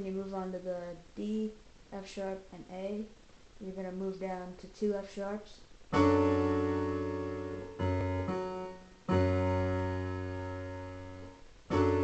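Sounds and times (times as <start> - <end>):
piano chords: 5.9 - 12.0.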